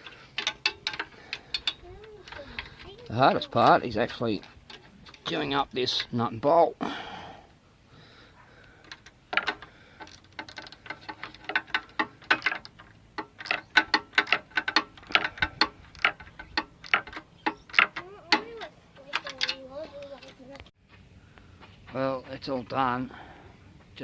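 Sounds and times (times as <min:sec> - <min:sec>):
metallic clicks of hand tools: 0:00.0 - 0:02.9, 0:08.6 - 0:20.6.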